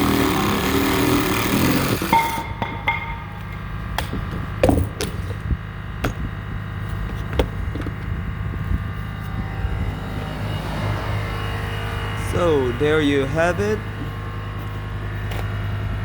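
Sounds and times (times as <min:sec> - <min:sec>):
reciprocating saw cutting: 0:00.0 - 0:02.7
low steady hum: 0:02.1 - 0:16.0.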